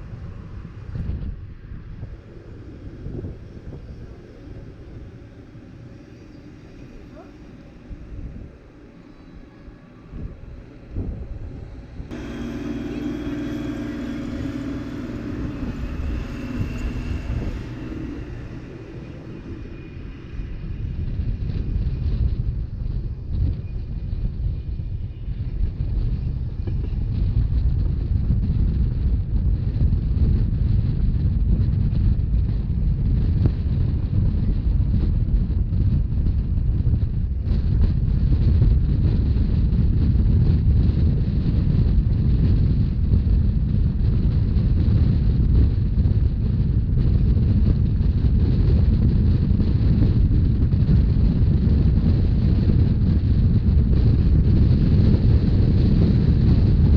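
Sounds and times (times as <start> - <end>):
humming tone: 0.0 - 27.7
train running gear rumble: 0.0 - 56.9
wind on microphone: 0.0 - 56.9.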